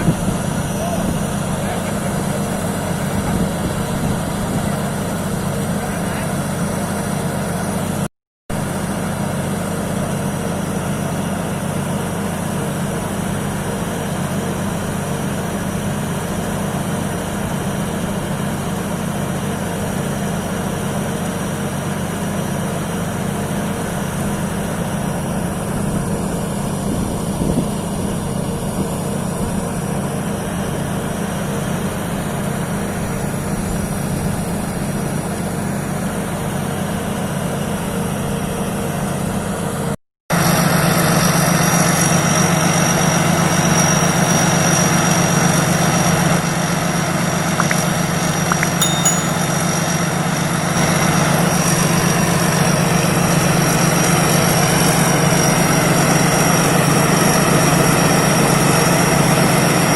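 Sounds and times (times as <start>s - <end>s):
combine harvester engine humming: 0.0s - 8.0s.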